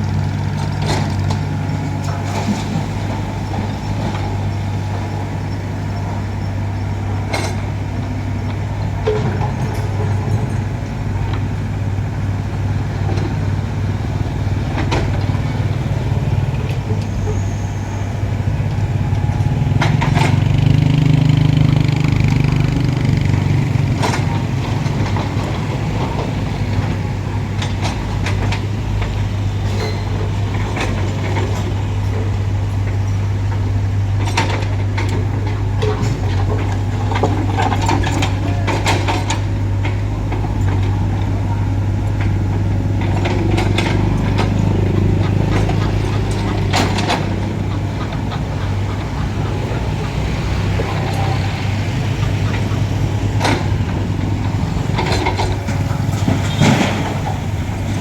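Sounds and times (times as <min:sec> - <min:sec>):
excavator diesel engine running: 0:00.0 - 0:58.0
metal clanks and knocks: 0:22.3 - 0:58.0.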